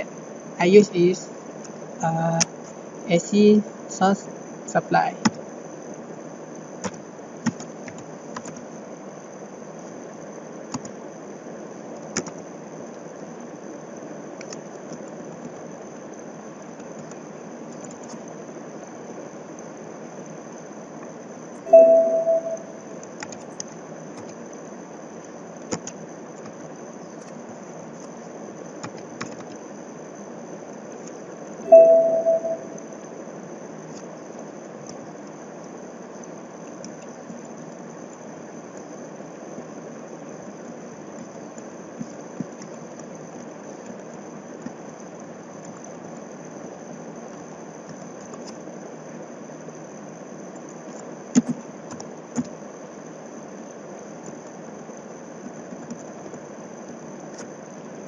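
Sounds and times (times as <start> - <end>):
microphone hiss and hum: 0.0 - 5.5
short loud pitched beep: 21.7 - 22.8, 31.7 - 32.8
thin high whine: 21.7 - 23.0, 31.7 - 33.0.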